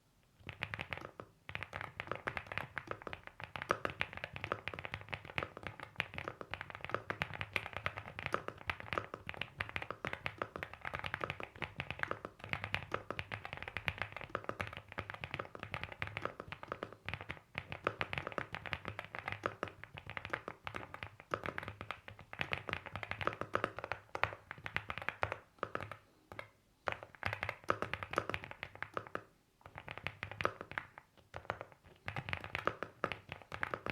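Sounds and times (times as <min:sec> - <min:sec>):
mechanical keyboard typing: 0:00.4 - 0:33.9.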